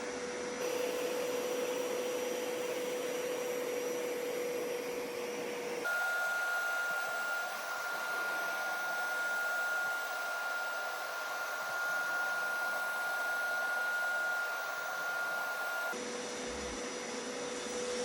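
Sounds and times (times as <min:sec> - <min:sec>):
carpet cleaner motor whine: 0:00.0 - 0:18.0.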